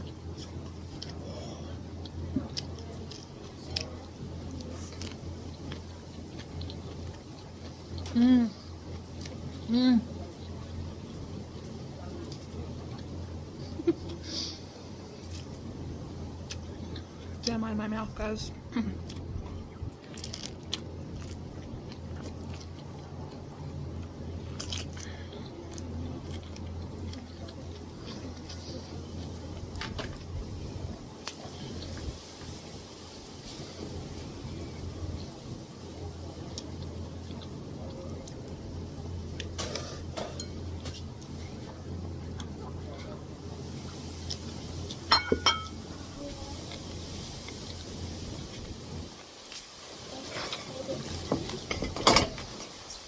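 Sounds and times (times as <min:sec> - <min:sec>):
wet chewing mouth sounds: 0:00.0 - 0:11.2, 0:18.9 - 0:30.4
low steady hum: 0:00.0 - 0:53.0
wet squishy chewing: 0:19.0 - 0:29.8.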